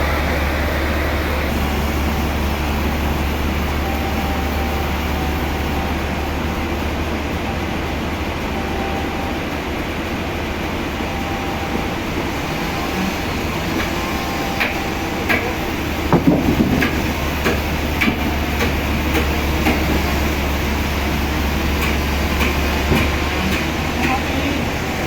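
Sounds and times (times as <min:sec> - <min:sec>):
heavy machinery humming: 0:00.0 - 0:25.0
knocks and clanks: 0:11.6 - 0:20.4, 0:21.3 - 0:25.0.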